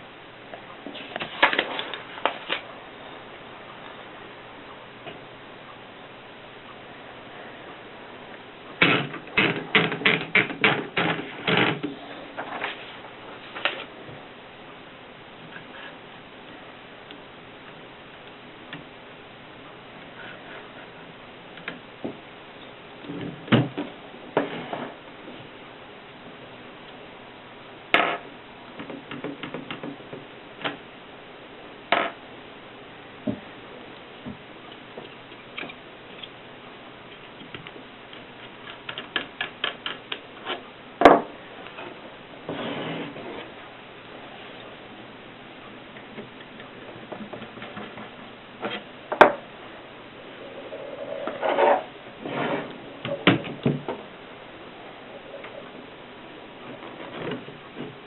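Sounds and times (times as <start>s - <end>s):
scraping and rubbing: 41.8s - 43.6s, 50.4s - 52.9s.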